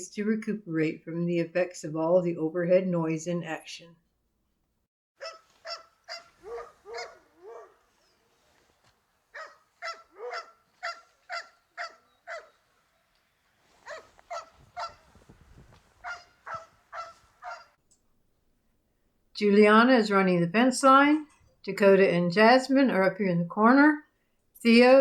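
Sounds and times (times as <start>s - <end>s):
goose-like honking calls: 5.2s - 7.8s, 9.4s - 12.6s, 16.0s - 17.8s.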